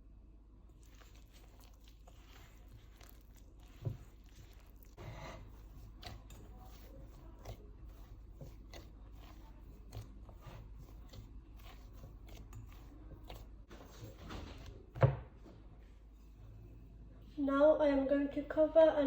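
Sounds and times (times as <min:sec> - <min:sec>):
dough squishing and slapping: 0:00.7 - 0:15.8.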